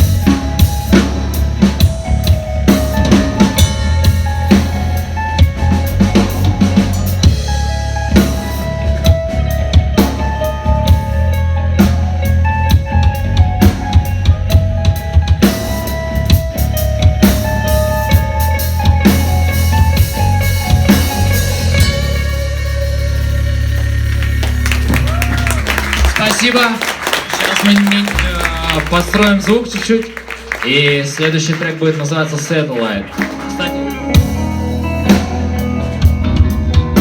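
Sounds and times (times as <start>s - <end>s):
low bass tone: 0.0s - 26.0s
drum kit beat: 0.0s - 37.0s
live band music: 0.0s - 37.0s.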